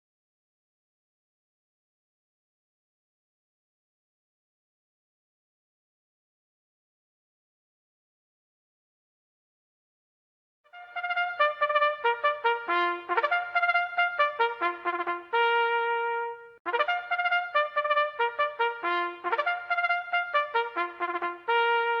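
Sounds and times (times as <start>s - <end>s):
trumpet fanfare: 10.7s - 22.0s.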